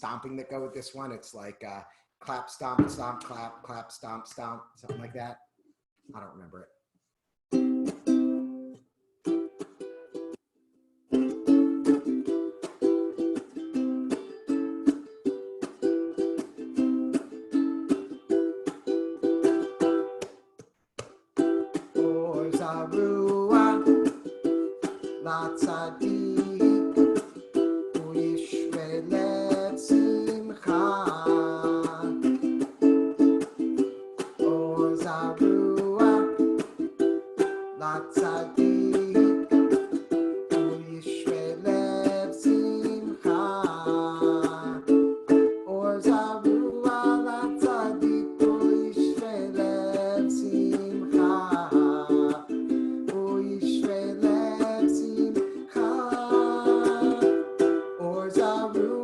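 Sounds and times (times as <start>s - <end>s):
man singing: 21.9s - 24.2s, 25.0s - 27.3s, 27.9s - 32.5s, 34.2s - 36.7s, 37.8s - 39.9s, 40.5s - 45.0s, 45.6s - 59.0s.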